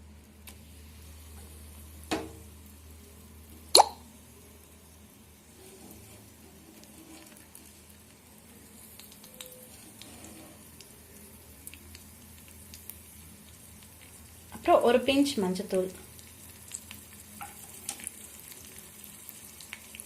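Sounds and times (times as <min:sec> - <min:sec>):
food sizzling in a pan: 0:00.6 - 0:20.0
small crackles: 0:05.5 - 0:14.5, 0:15.8 - 0:20.0.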